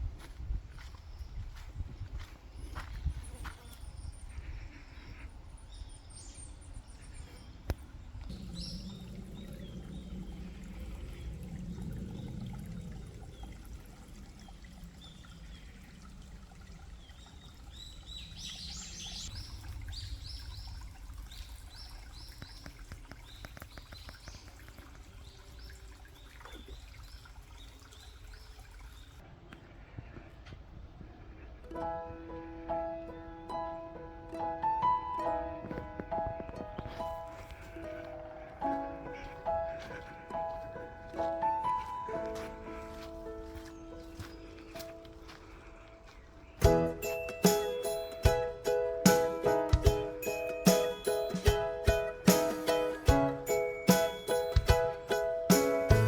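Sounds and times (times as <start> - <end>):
small birds chirping: 0.0 - 30.2, 36.2 - 56.0
water trickling: 7.6 - 29.2, 34.9 - 56.0.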